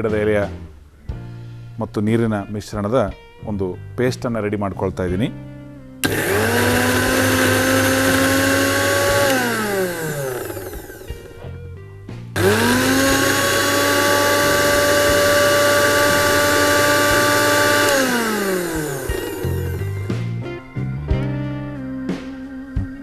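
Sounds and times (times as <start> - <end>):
mixer grinder motor whine: 6.0 - 11.6, 12.4 - 20.4.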